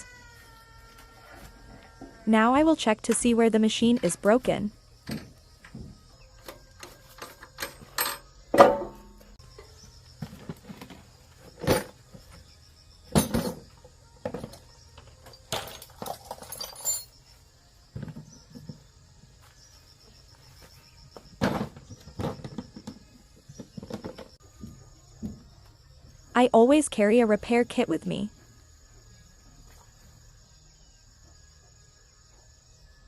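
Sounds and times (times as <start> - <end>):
insects chirring: 0.0 - 33.0
metal clinks and knocks: 6.8 - 9.3, 13.1 - 17.3.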